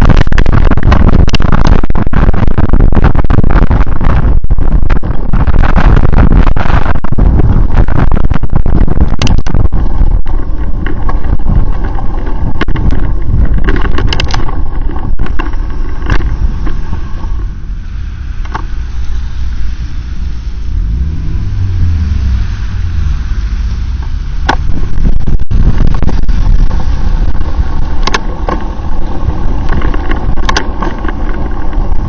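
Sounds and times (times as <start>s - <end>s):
vehicle rumbling on wet road: 0.0s - 32.0s
wind buffeting microphone: 0.0s - 32.0s.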